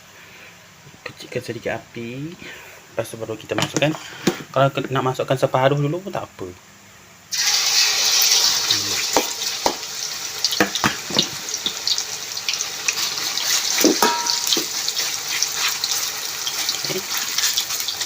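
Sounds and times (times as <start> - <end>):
chicken sizzling in hot oil: 7.3 - 18.0
knocks of food into pan: 9.1 - 9.9, 10.6 - 11.8, 13.8 - 14.8.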